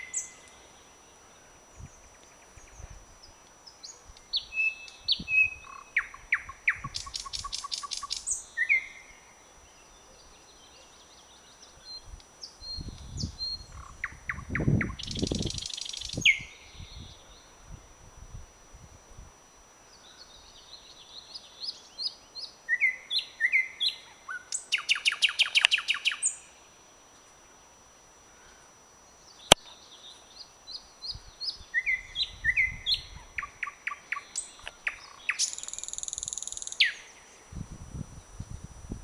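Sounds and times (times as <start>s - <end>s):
nightingale singing: 0.0s - 0.8s, 1.7s - 9.2s, 9.8s - 17.6s, 20.0s - 26.6s, 29.2s - 37.4s
sharp click: 25.5s - 25.8s.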